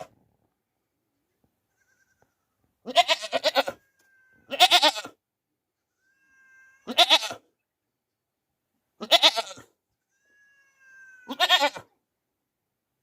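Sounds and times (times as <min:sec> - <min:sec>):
goat bleating: 0:01.7 - 0:05.2, 0:05.9 - 0:07.5, 0:09.0 - 0:12.0.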